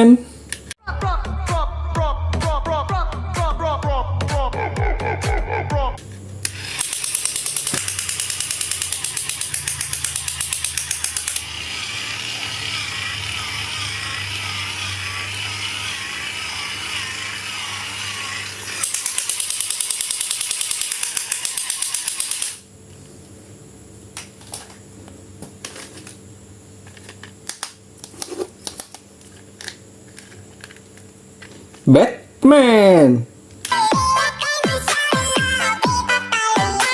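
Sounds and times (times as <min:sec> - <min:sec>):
fast mechanical rattling buzz: 0:06.0 - 0:22.8.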